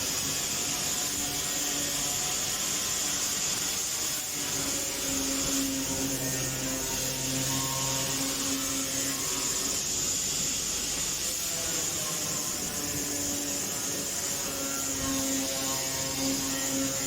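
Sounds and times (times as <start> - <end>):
sanding grinder whirring: 0.0 - 17.0.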